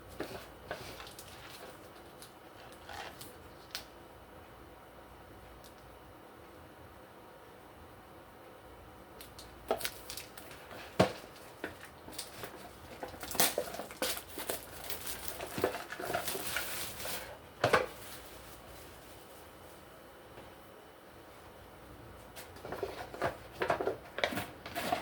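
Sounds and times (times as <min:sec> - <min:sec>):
rustling: 0:09.8 - 0:19.9.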